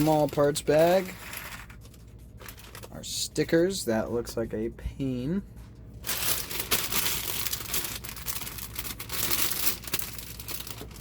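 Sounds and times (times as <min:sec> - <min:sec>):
plastic bags crinkling: 0:00.0 - 0:03.1, 0:06.0 - 0:11.0.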